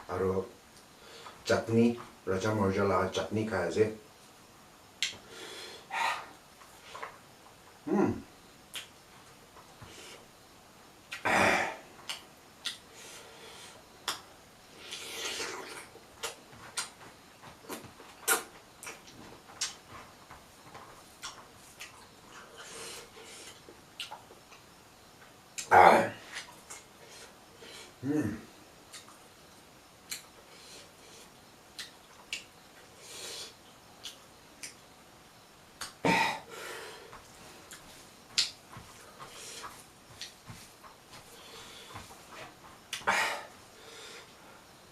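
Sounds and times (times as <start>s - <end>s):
mouth clicks and smacks: 5.0s - 5.2s, 8.7s - 9.0s, 11.1s - 11.3s, 12.0s - 12.8s, 14.0s - 14.3s, 14.9s - 19.9s, 21.2s - 22.1s, 23.4s - 24.7s, 28.9s - 29.2s, 30.1s - 30.3s, 31.7s - 32.5s, 34.0s - 34.8s, 35.8s - 36.0s, 37.7s - 40.6s, 42.9s - 43.1s
wet mouth clicks and smacks: 8.7s - 8.9s, 12.0s - 12.8s, 30.1s - 30.3s, 31.8s - 32.5s
person chewing: 14.8s - 19.8s, 21.2s - 24.6s.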